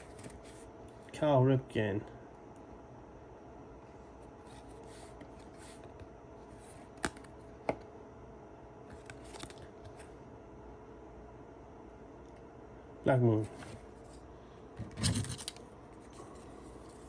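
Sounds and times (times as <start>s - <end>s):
trading cards sliding: 4.4s - 7.5s.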